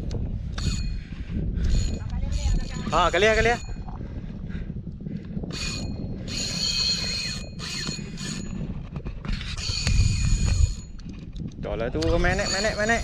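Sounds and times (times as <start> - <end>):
fishing reel whirring: 0.0 - 1.0, 1.6 - 3.9, 5.3 - 11.5, 12.1 - 13.0
low rumble: 0.0 - 6.3.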